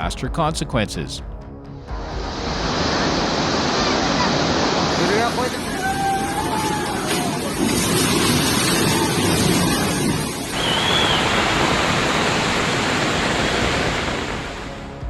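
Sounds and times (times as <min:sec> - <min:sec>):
rushing floodwater roar: 0:02.3 - 0:15.0
high whistle-like tone: 0:10.5 - 0:11.4.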